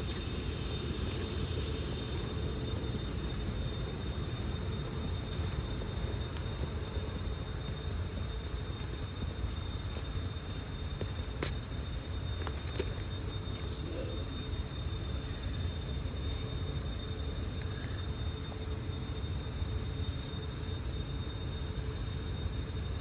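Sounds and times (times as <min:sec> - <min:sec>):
faint high-pitched whine: 0:00.0 - 0:23.0.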